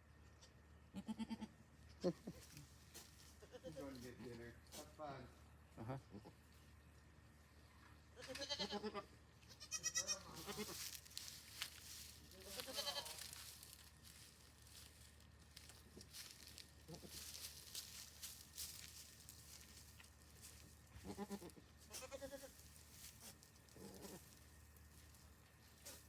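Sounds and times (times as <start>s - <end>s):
goats bleating: 3.4s - 3.8s, 8.2s - 10.9s, 12.3s - 13.4s, 21.0s - 22.6s, 23.7s - 24.3s
faint rustling and crackling: 10.4s - 26.0s.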